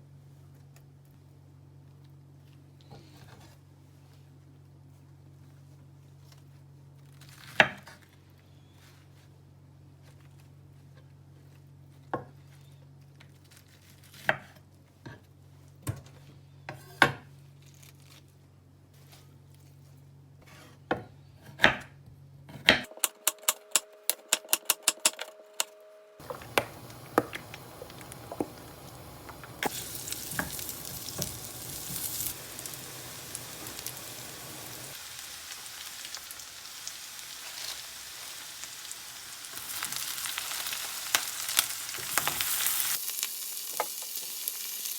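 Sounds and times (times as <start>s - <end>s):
low hum: 25.4s - 35.0s
food sizzling in a pan: 26.2s - 44.9s.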